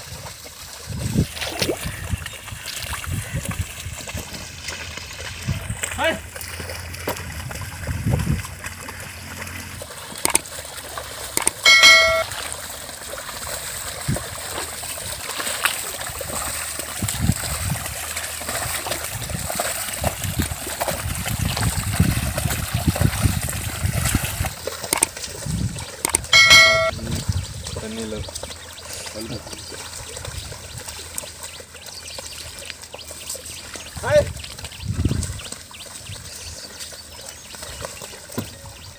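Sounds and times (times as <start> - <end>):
muddy water sloshing and splashing: 0.0 - 38.9
loud high-pitched tone: 11.4 - 12.3, 26.2 - 26.9.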